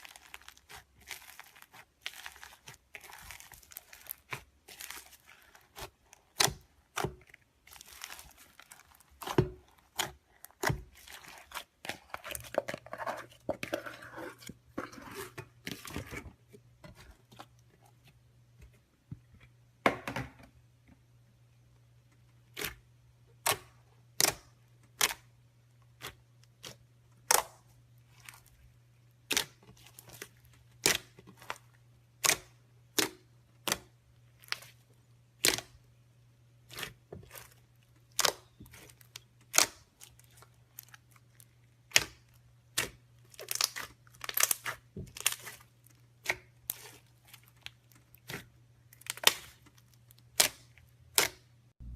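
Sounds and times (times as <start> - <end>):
slime squishing: 0.0 - 18.8, 22.3 - 51.9.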